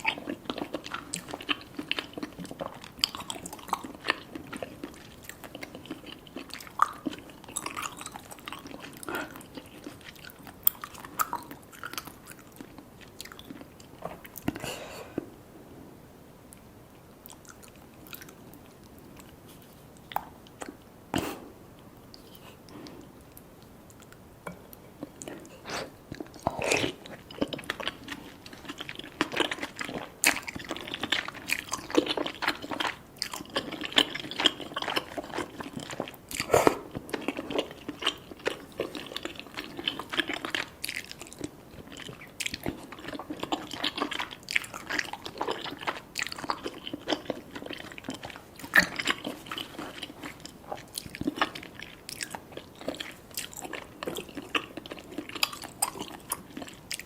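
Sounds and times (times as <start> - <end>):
person biting and chewing: 25.2 - 57.0.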